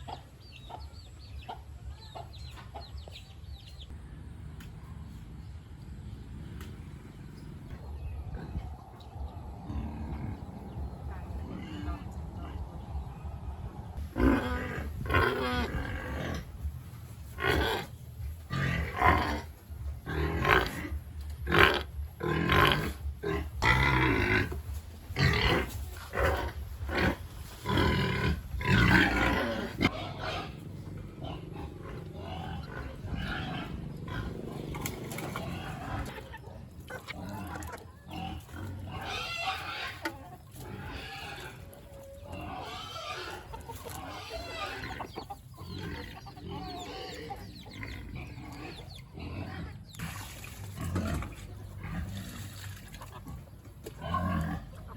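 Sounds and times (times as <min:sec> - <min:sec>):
pigs calling harshly: 0:14.0 - 0:16.6, 0:17.2 - 0:54.9.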